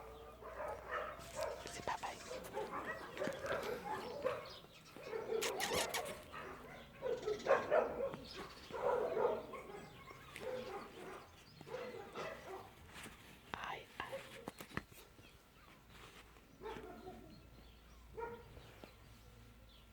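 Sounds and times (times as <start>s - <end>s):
dogs barking: 0.0s - 12.9s, 16.5s - 18.7s
sharp clicks: 5.4s - 6.2s.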